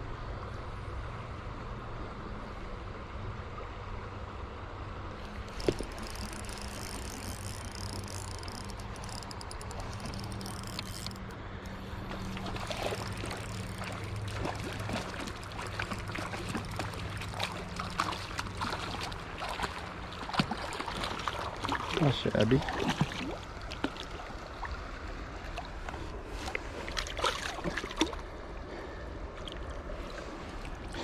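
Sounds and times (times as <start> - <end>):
river water running: 0.0 - 31.0
steady low hum: 0.0 - 31.0
splashes and small clicks: 5.2 - 28.4, 29.3 - 31.0.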